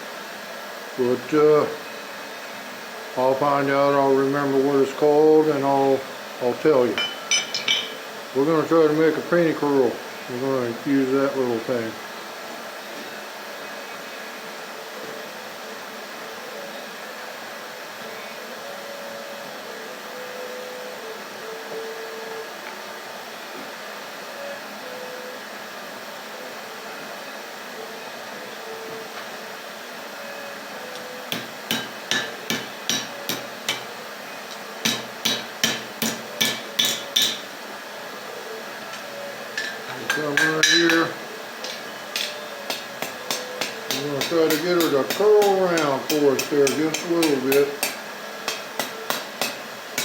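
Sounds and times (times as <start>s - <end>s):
hammer blows on hot steel: 31.3s - 34.0s, 34.8s - 37.5s, 39.6s - 50.0s.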